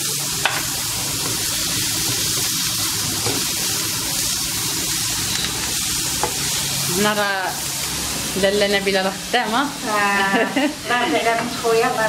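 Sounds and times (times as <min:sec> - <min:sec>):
food sizzling in a pan: 0:00.0 - 0:12.0.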